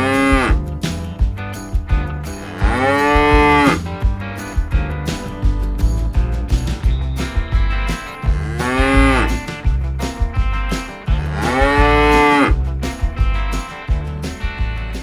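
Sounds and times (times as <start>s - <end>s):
background music with a beat: 0.0s - 15.0s
cow mooing: 11.4s - 12.5s.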